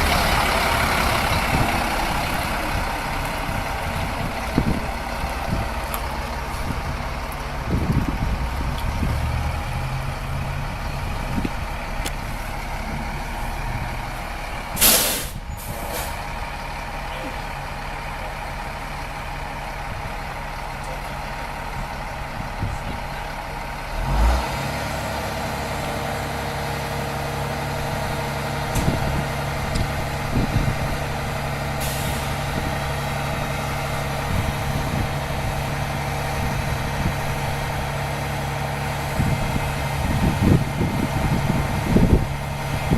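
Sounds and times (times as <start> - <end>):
diesel engine idling: 0.0 - 42.9
air brakes hissing: 14.8 - 16.2, 31.8 - 32.5.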